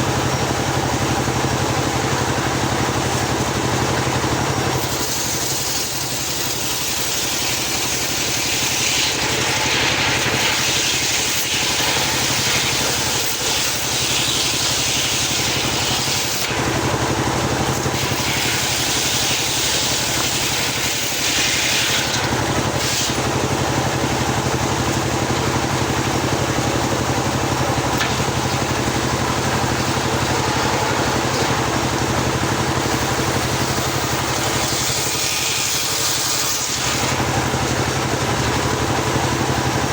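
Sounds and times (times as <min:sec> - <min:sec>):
low engine hum: 0:22.0 - 0:39.9.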